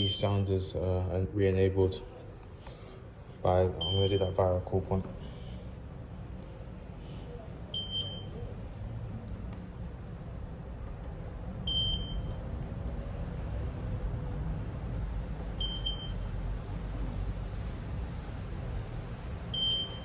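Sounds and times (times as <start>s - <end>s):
low steady rumble: 0.0s - 20.0s
high electronic alarm beep: 3.8s - 4.4s, 7.8s - 8.4s, 11.7s - 12.3s, 15.6s - 16.2s.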